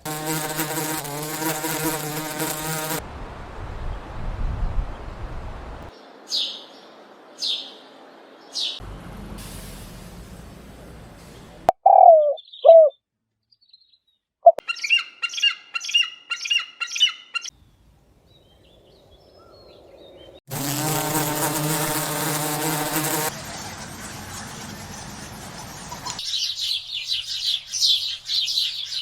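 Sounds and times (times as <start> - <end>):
lower curved bird calls: 11.8 - 13.0, 13.6 - 17.5
repeated bird call notes: 11.8 - 13.0, 13.7 - 17.5
short high bird chirps: 11.8 - 13.0.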